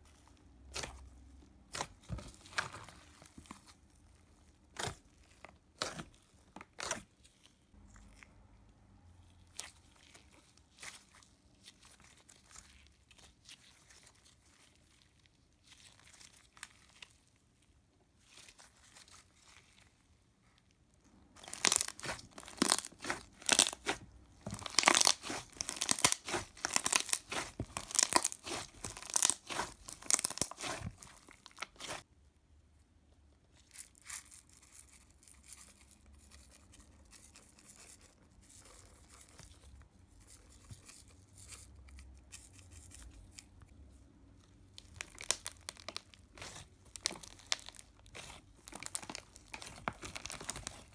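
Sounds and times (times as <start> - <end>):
slime squishing and clicking: 21.4 - 32.0, 44.8 - 50.9.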